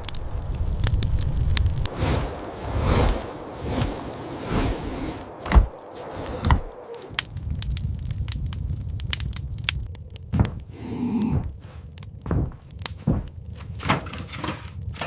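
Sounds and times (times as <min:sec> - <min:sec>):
low rumble: 0:00.0 - 0:15.0
whooshing swishes: 0:01.8 - 0:07.2
heavy thuds: 0:10.3 - 0:13.4.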